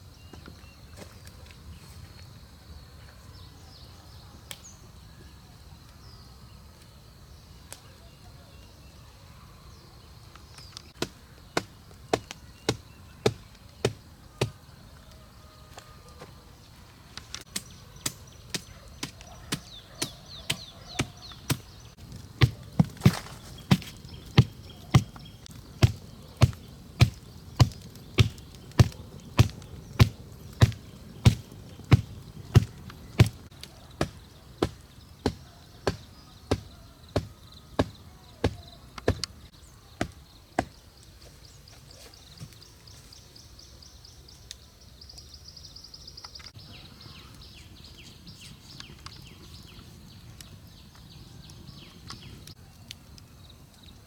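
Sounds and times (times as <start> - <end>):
blade chopping: 17.5 - 39.2.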